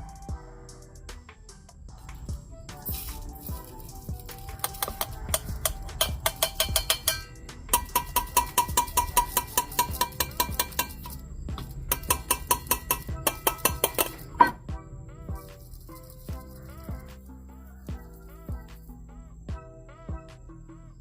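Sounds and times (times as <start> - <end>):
rapid metallic tapping: 2.8 - 14.6.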